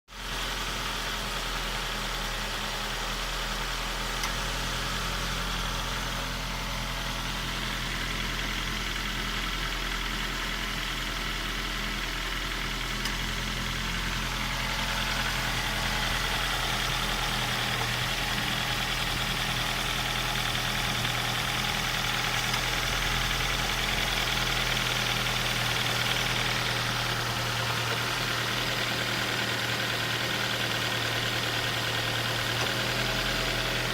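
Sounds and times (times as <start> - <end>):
car engine idling: 0.2 - 33.9
engine clicking noise: 7.6 - 33.9.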